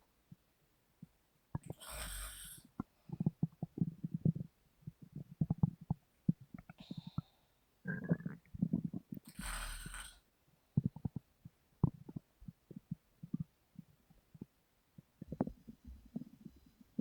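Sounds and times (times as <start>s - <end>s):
stomach gurgling and rumbling: 1.0s - 10.2s, 10.8s - 17.0s
breathy hiss: 1.7s - 2.7s, 9.3s - 10.2s.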